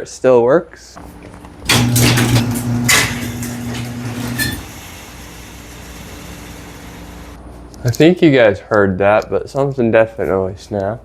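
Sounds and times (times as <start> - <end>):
garage door motor humming: 1.5 - 7.4
sharp clack of motor stopping: 1.7 - 4.7.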